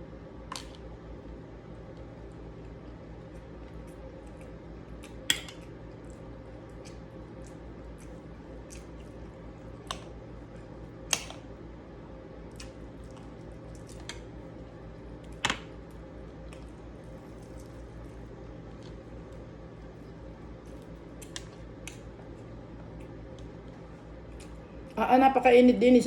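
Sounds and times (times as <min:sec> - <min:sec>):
steady low hum: 0:00.0 - 0:26.0
chewing and mouth sounds: 0:01.8 - 0:11.5, 0:12.4 - 0:25.0.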